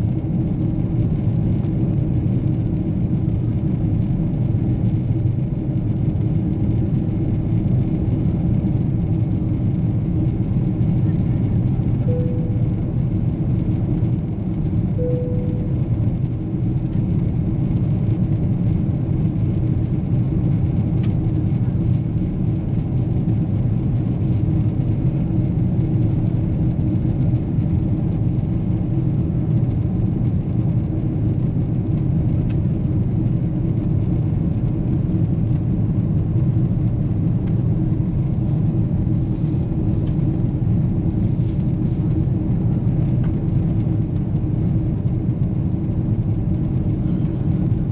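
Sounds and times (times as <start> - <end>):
jet engines rumbling: 0.0 - 28.2, 30.3 - 47.9
short low tone: 11.9 - 13.5, 14.9 - 16.5.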